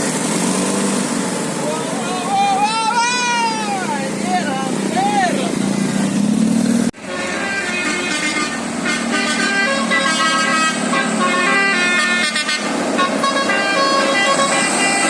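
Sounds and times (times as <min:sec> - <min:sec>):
bus horn playing a tune: 0:07.0 - 0:15.0.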